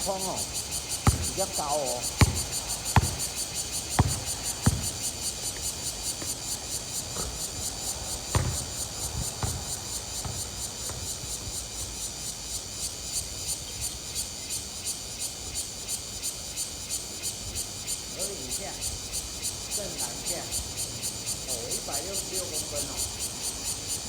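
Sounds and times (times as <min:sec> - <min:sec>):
insects calling in chorus: 0:00.0 - 0:24.0
basketball bouncing on court: 0:00.9 - 0:11.6.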